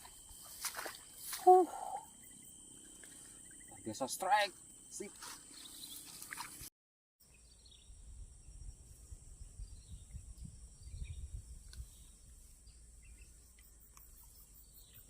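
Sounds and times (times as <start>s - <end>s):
faint bird chirps: 1.4s - 4.2s
wind rumble on microphone: 7.6s - 13.4s.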